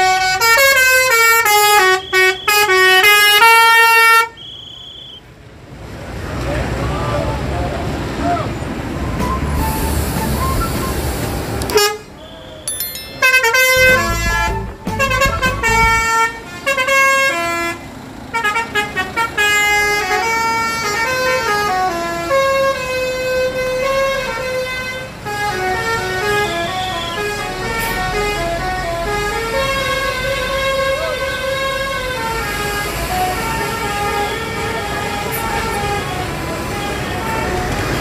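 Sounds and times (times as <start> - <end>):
multi-tone air horn melody: 0.0 - 4.4, 9.4 - 38.0
low engine rumble: 13.7 - 16.5.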